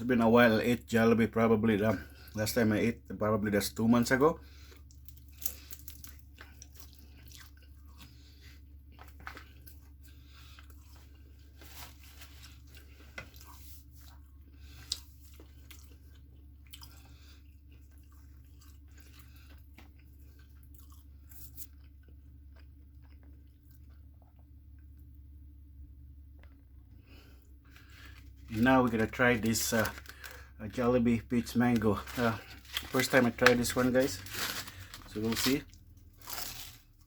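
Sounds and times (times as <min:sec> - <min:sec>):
faint low hum: 0:00.0 - 0:37.0
person chewing crunchy food: 0:04.5 - 0:25.4, 0:31.6 - 0:37.0.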